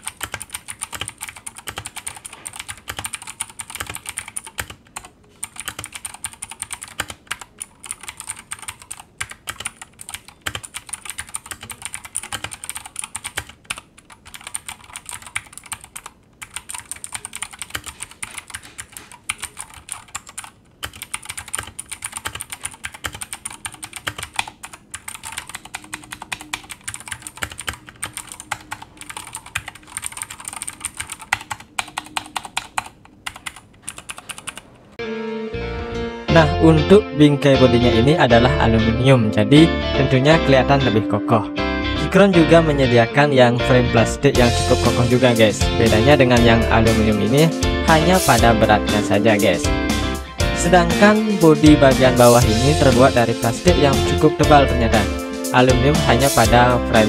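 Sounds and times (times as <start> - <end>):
clicky mechanical keyboard typing: 0.0 - 34.8.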